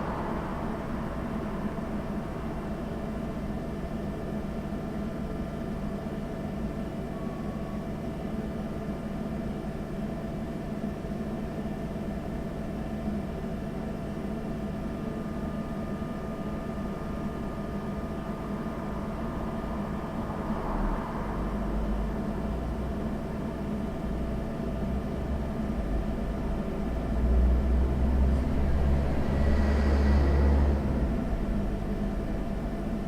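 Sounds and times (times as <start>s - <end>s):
traffic rumble: 0.0s - 3.6s, 18.2s - 24.2s
electrical hum: 0.0s - 33.0s.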